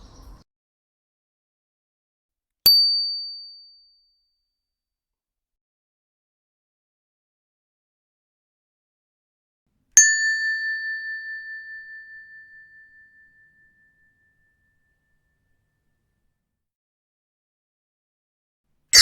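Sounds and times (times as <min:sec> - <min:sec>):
small bell ding: 0:02.7 - 0:04.2, 0:10.0 - 0:14.3.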